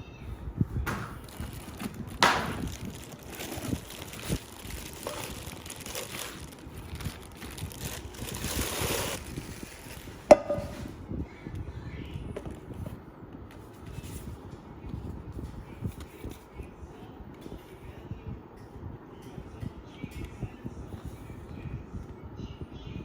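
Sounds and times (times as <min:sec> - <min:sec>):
handling noises: 0:00.7 - 0:11.0.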